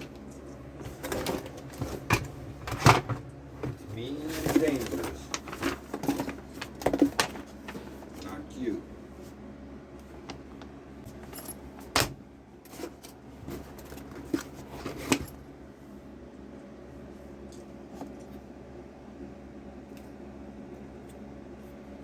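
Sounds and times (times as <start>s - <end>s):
hard items clinking and knocking: 0.0s - 8.2s.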